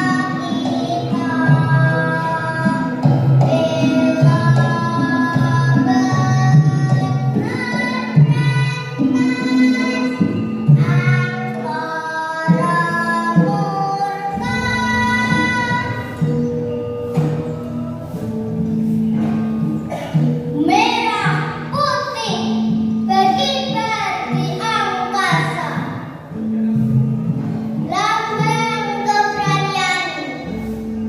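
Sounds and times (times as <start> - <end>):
child singing: 0.0 - 16.4, 20.6 - 26.1, 27.8 - 30.6
instrumental accompaniment: 0.0 - 31.0.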